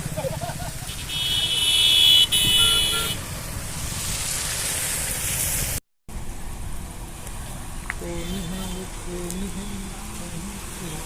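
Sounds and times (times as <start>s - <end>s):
vehicle horn blaring: 0.9s - 3.2s
low engine rumble: 6.1s - 11.0s.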